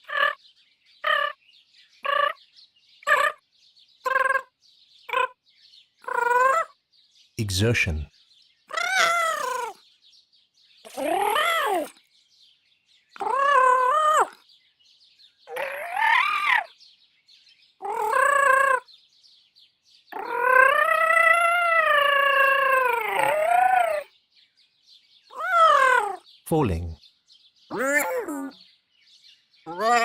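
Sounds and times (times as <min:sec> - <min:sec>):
robot voice warbling calls: 0:03.1 - 0:03.4, 0:04.1 - 0:04.5, 0:05.1 - 0:05.4, 0:13.2 - 0:14.3, 0:17.8 - 0:18.9, 0:20.1 - 0:24.0, 0:25.4 - 0:27.0, 0:29.7 - 0:30.0.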